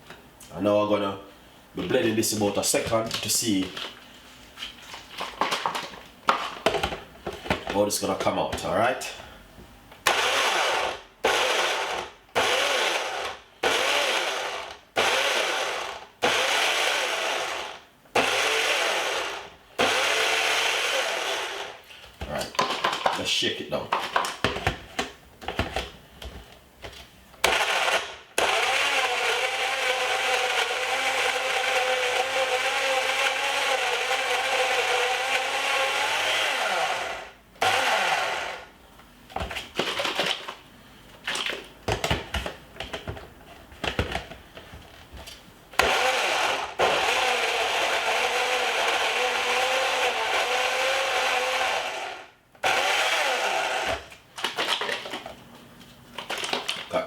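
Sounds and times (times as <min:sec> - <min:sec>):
blender crushing ice: 0:10.1 - 0:21.8, 0:27.4 - 0:38.6, 0:45.8 - 0:55.2.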